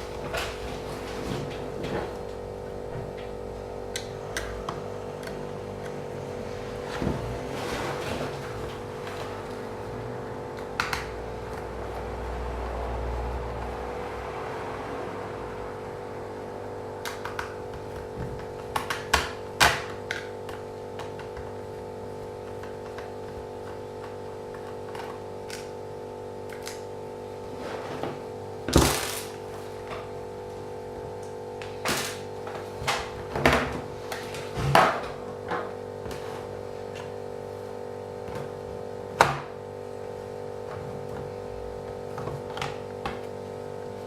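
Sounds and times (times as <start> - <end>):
steady hum: 0.0 - 44.0.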